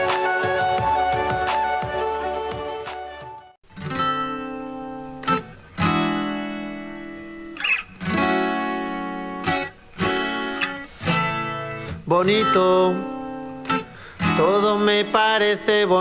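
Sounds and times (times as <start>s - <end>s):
strummed acoustic guitar chords: 3.7s - 16.0s.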